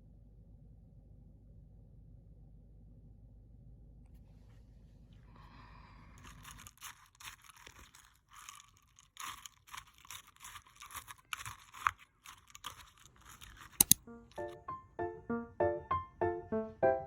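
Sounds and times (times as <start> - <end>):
scratchy scraping strokes: 6.2 - 14.0
sharp clicks: 10.1 - 14.5
piano music: 14.0 - 17.0.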